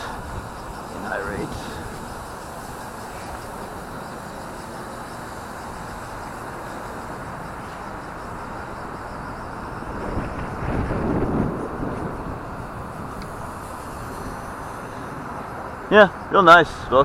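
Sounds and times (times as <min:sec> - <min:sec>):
wind on microphone: 0:00.0 - 0:04.0, 0:07.0 - 0:15.9
toy helicopter motor whine: 0:00.0 - 0:17.0.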